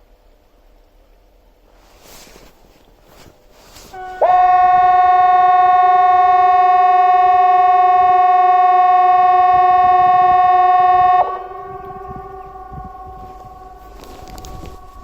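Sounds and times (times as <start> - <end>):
warning siren steady tone: 3.7 - 15.0
distant siren tone: 3.8 - 15.0.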